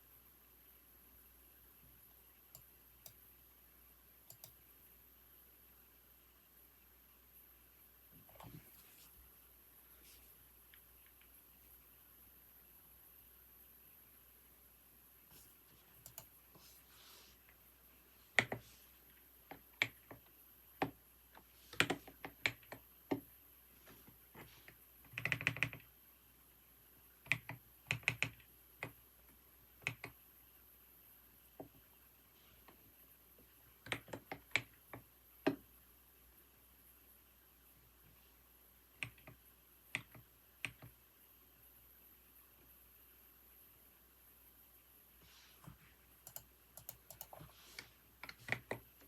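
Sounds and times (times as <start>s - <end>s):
typing on a computer keyboard: 4.3s - 4.6s, 16.0s - 16.3s, 21.7s - 23.2s, 25.0s - 25.9s, 27.2s - 29.0s, 29.8s - 30.2s, 33.8s - 35.0s, 39.0s - 41.0s, 46.2s - 47.4s, 48.2s - 48.9s.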